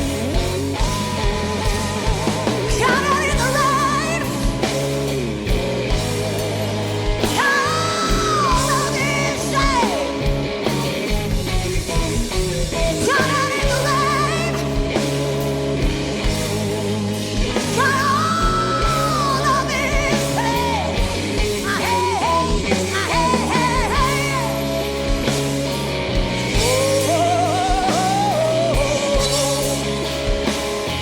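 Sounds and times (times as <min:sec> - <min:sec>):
bass and guitar playing: 0:00.0 - 0:31.0
woman singing with vibrato: 0:00.3 - 0:04.7, 0:07.3 - 0:10.4, 0:12.7 - 0:15.2, 0:17.6 - 0:24.8, 0:26.6 - 0:30.1.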